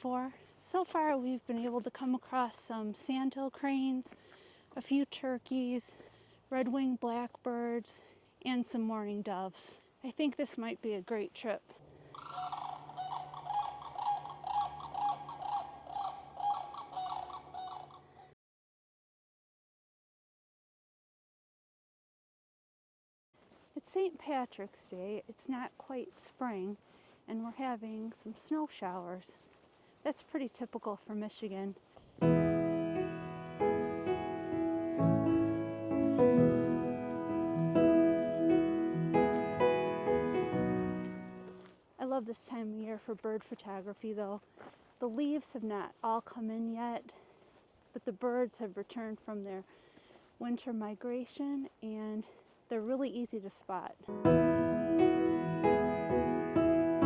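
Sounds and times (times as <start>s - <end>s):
background music with steady beat: 32.2s - 41.6s
piano playing slow chords: 32.2s - 41.6s, 54.1s - 57.0s.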